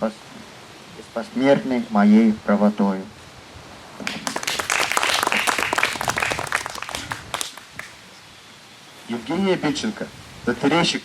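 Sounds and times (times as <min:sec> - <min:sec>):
audience applauding: 0:04.0 - 0:08.0.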